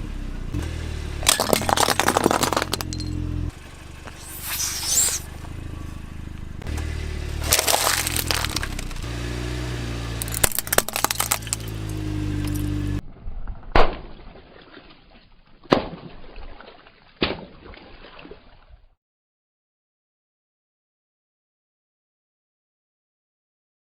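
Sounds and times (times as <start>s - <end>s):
car engine running low: 0.0s - 13.2s
tyre crushing crunchy objects: 1.2s - 3.1s, 7.4s - 9.1s, 10.2s - 12.6s
sharp cracks: 1.3s - 2.9s, 7.4s - 9.1s, 10.2s - 11.9s, 13.4s - 14.4s.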